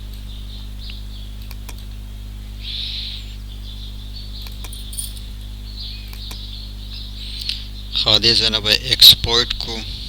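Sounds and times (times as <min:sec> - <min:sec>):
electrical mains hum: 0:00.0 - 0:10.0
soft clicks: 0:04.4 - 0:05.2.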